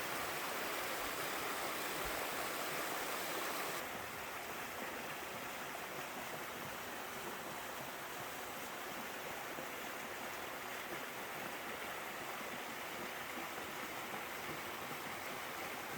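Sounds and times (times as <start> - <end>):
waterfall pouring and splashing: 0.0 - 15.9.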